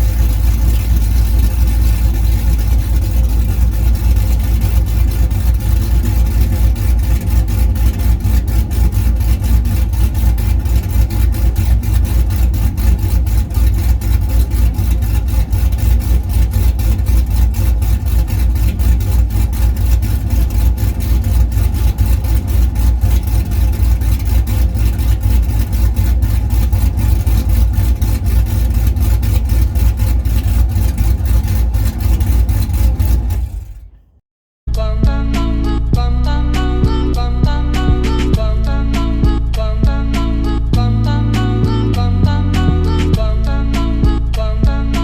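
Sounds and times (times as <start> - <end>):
car engine idling loudly: 0.0 - 34.2.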